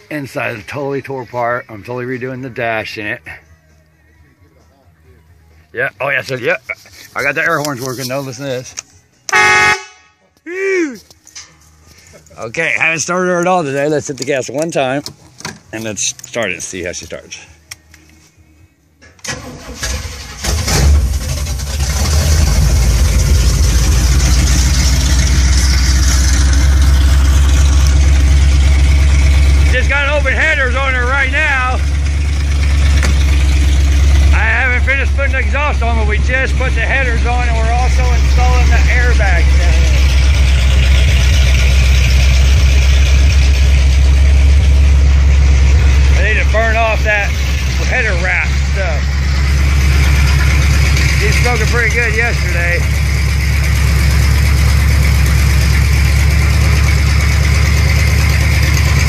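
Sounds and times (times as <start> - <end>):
starter motor cranking: 19.2 - 24.1
engine idling loudly: 20.6 - 59.0.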